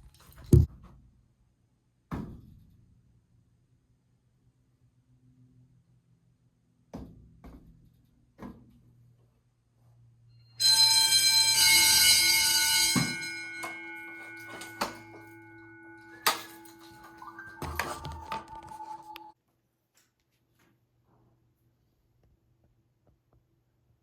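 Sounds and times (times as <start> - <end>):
fire alarm bell ringing: 10.4 - 19.4.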